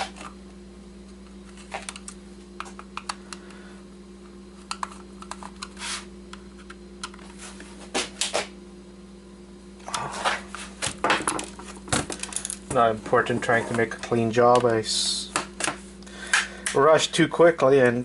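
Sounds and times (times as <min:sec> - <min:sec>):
steady low hum: 0:00.0 - 0:18.0
brief scrape: 0:05.8 - 0:06.1.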